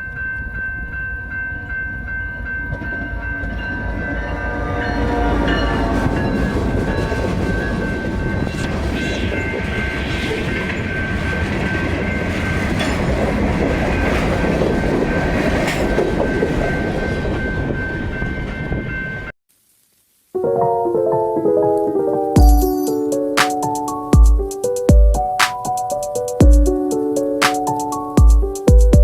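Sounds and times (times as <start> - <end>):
train cars rumbling past: 1.6 - 19.3
train horn: 3.9 - 9.3.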